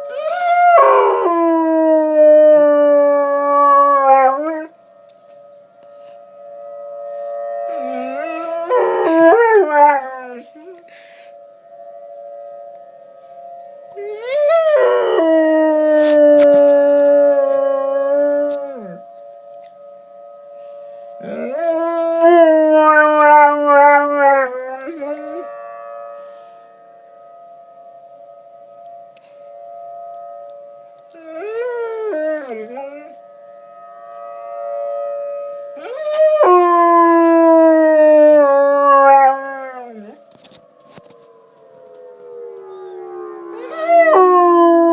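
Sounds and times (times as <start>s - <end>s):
dog howling: 0.0s - 4.7s, 7.7s - 10.9s, 13.9s - 19.0s, 21.2s - 25.6s, 31.2s - 33.2s, 35.8s - 40.2s, 41.9s - 44.9s
siren tone: 0.0s - 44.9s.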